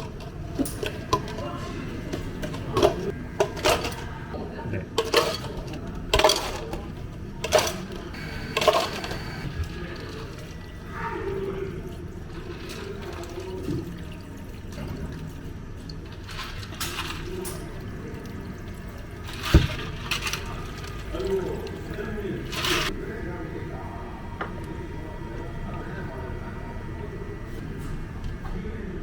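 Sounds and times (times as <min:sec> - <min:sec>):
cups and utensils clinking: 0:00.0 - 0:10.8
liquid pouring: 0:08.2 - 0:22.6.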